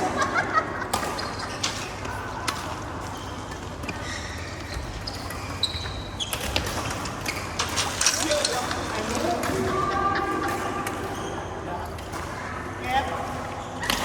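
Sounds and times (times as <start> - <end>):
racket hitting shuttlecock: 0.9 - 4.0.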